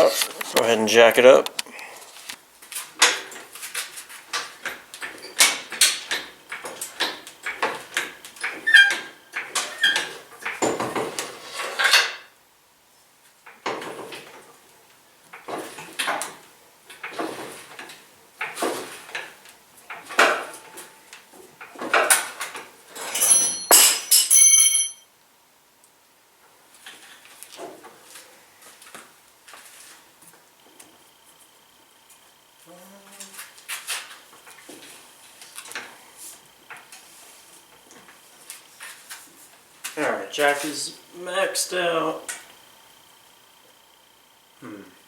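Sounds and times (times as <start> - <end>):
metal pieces clinking: 23.1 - 25.0.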